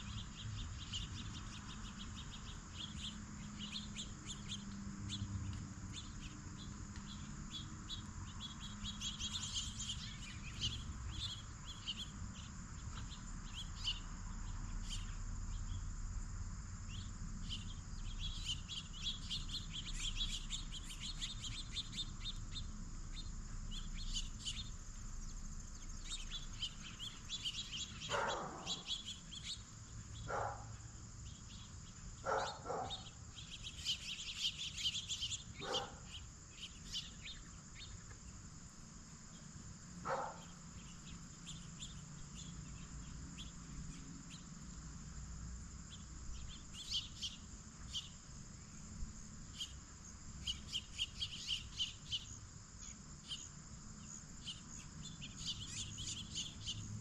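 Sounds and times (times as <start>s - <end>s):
lower bird calls: 0.0s - 15.9s, 16.9s - 38.4s, 39.3s - 44.6s, 45.9s - 48.9s, 49.5s - 57.0s
high bird chirps: 25.9s - 38.0s.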